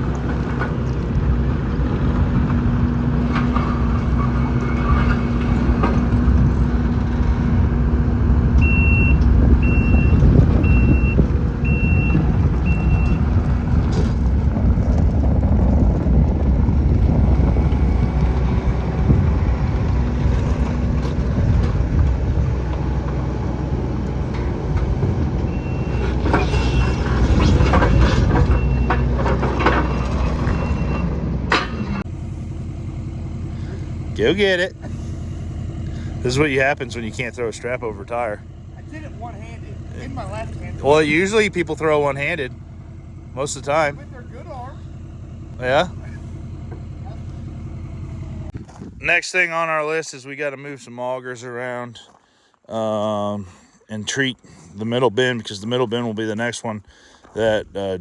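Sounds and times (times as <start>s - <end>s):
heavy vehicle engine running: 0.0s - 49.8s
backup alarm beeping: 8.6s - 13.3s
metal knocks and clanks: 17.6s - 32.1s.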